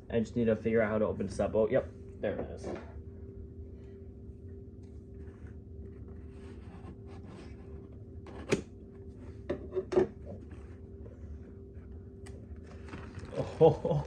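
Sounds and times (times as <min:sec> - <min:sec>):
steady low hum: 0:00.0 - 0:14.0
cardboard rubbing and scraping: 0:05.2 - 0:08.4.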